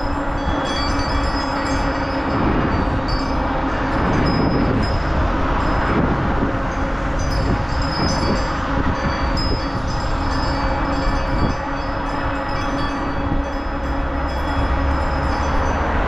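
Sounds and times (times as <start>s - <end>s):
road noise: 0.0s - 16.0s
wind noise: 0.0s - 16.0s.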